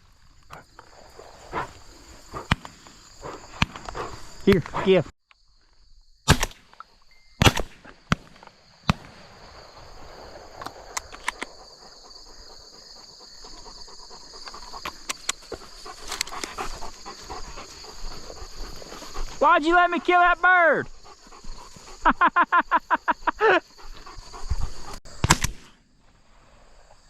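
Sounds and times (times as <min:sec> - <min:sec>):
insects droning: 0:00.0 - 0:27.0
shotgun shots: 0:06.3 - 0:06.8, 0:07.4 - 0:09.5, 0:25.2 - 0:25.8.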